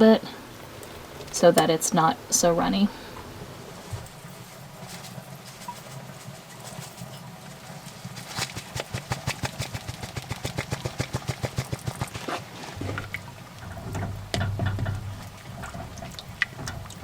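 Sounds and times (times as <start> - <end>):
steady low hum: 0.0 - 5.8, 7.5 - 17.0
utensil knocking against a pot: 12.8 - 17.0.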